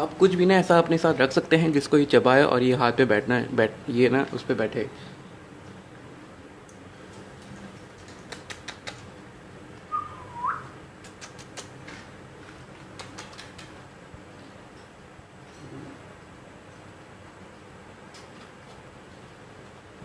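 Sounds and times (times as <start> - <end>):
rising whistle: 9.9 - 10.8.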